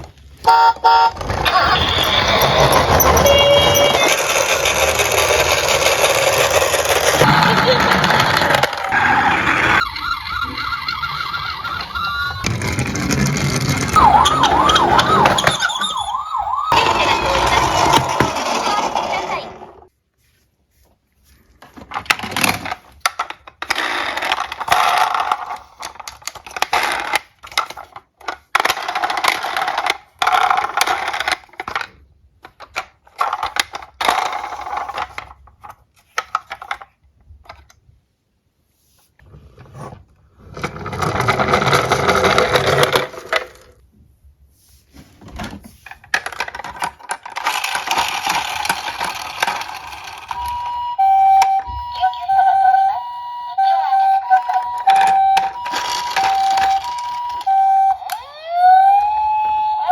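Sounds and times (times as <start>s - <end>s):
metal toy cars clattering: 0.9s - 8.9s, 45.3s - 50.6s.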